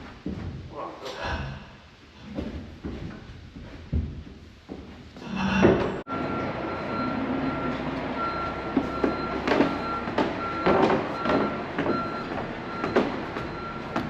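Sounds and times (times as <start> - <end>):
backup alarm beeping: 5.9 - 14.0
machine running noise: 5.9 - 14.0
machine clanks and rattles: 8.8 - 14.0.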